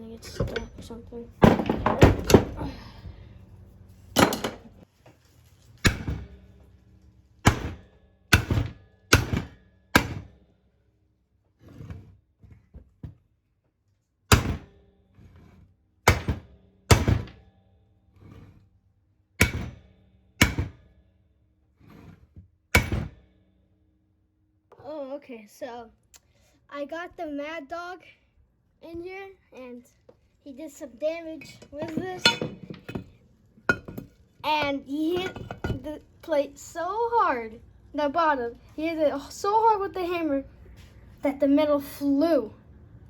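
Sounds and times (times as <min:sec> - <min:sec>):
hammer striking metal plate: 0:07.4 - 0:10.4, 0:16.1 - 0:17.4, 0:19.4 - 0:20.9, 0:22.8 - 0:23.3.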